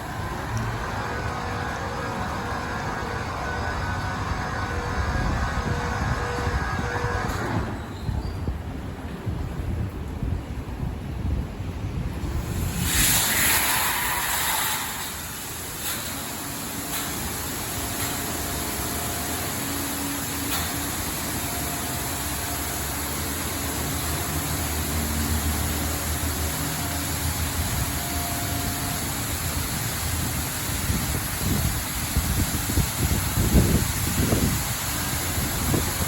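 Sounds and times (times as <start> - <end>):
machinery rumble: 0.0 - 36.0
car wash spray hiss: 12.2 - 36.0
faint motor whine: 12.2 - 36.0.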